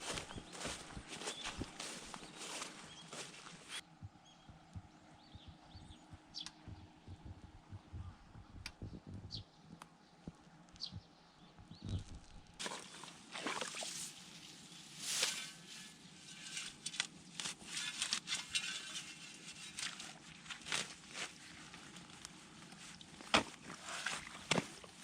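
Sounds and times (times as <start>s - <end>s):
footsteps on muddy ground: 0.0s - 3.8s
brushing sounds: 13.8s - 21.4s.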